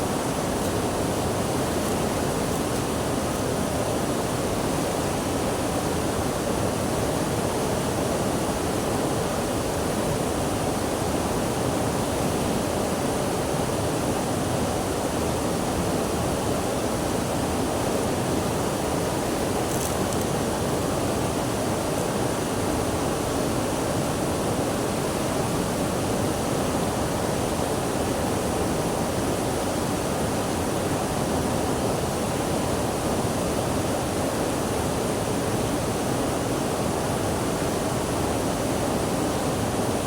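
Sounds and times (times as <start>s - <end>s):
running water rushing: 0.0s - 7.5s.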